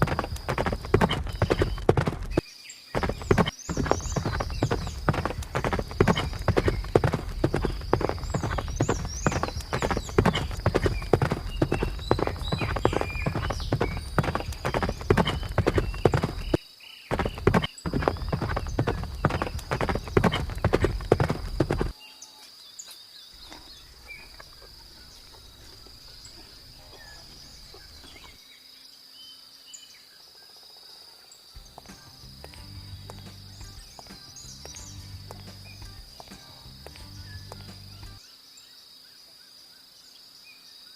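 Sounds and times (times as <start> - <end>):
horse hooves on hard ground: 0.0 - 22.0, 31.6 - 38.2.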